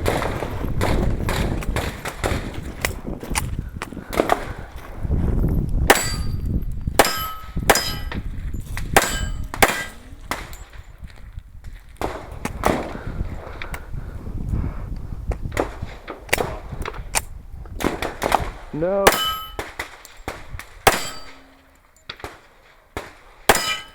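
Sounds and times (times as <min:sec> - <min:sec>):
gunshots: 0:00.0 - 0:02.8, 0:09.0 - 0:10.7, 0:17.8 - 0:21.6
steel plate clanging: 0:05.9 - 0:10.8, 0:19.1 - 0:19.8, 0:20.9 - 0:22.1, 0:23.5 - 0:23.9.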